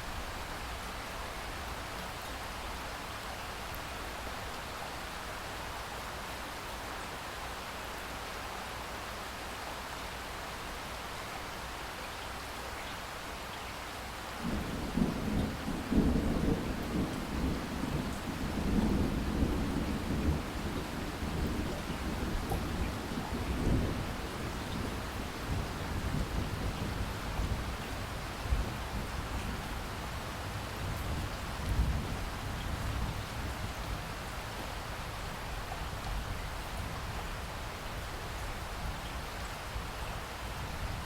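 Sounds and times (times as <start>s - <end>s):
steady rain: 0.0s - 41.0s
thunder rumbling: 14.4s - 33.6s.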